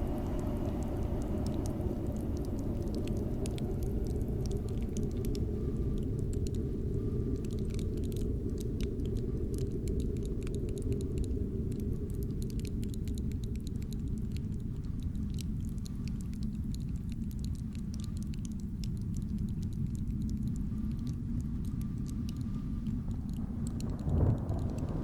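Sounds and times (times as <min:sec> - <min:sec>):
cold wind blowing: 0:00.0 - 0:09.5, 0:21.4 - 0:25.0
frost crackling clicks: 0:00.0 - 0:25.0.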